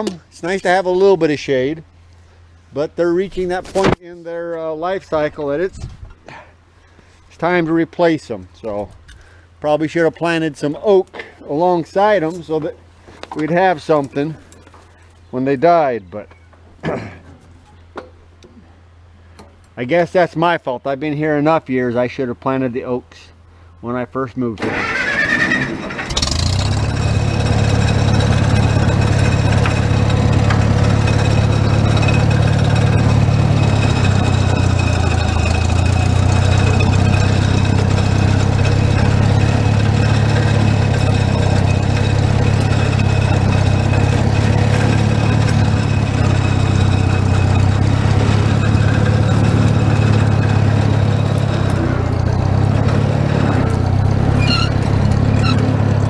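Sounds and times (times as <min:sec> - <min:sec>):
tractor engine running: 0:00.0 - 0:11.1, 0:24.6 - 0:56.0
tractor engine cranking: 0:24.6 - 0:56.0.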